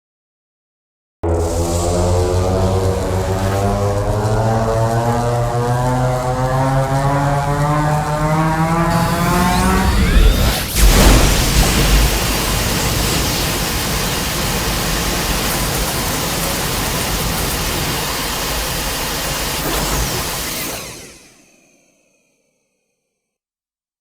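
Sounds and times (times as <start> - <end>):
loud rushing noise: 1.2 - 18.0
deep boom: 9.7 - 13.4.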